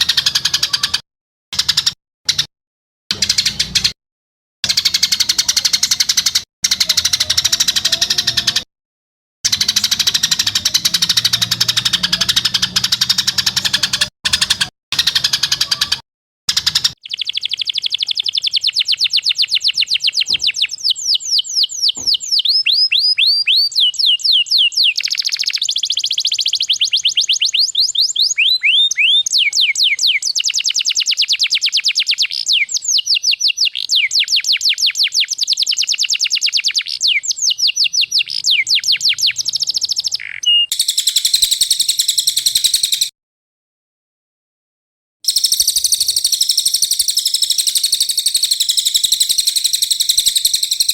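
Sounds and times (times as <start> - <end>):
songbird song: 16.7 - 43.1, 45.3 - 50.9.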